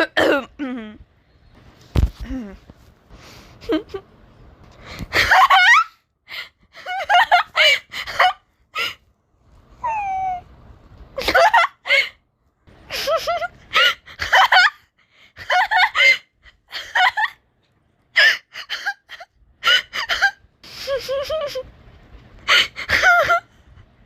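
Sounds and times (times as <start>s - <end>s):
person laughing hard: 5.1s - 5.9s, 12.9s - 14.8s, 18.2s - 21.7s, 22.5s - 23.5s.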